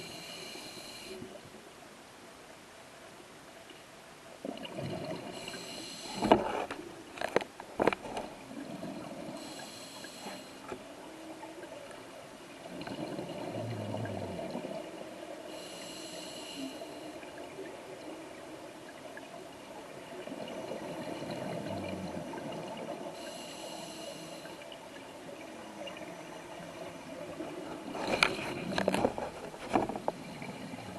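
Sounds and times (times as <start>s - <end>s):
regulator hissing inhale: 0.0s - 1.2s, 5.4s - 6.4s, 9.4s - 10.7s, 15.5s - 17.2s, 23.2s - 24.6s.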